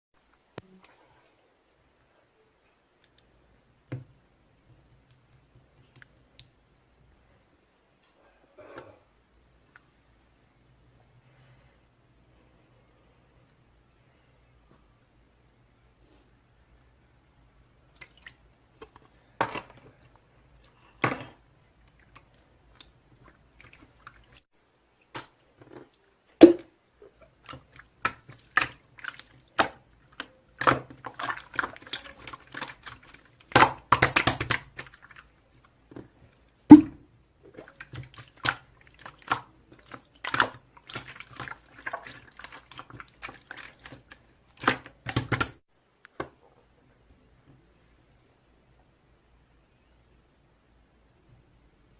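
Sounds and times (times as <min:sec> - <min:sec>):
slime squishing by hand: 0:25.1 - 0:45.6.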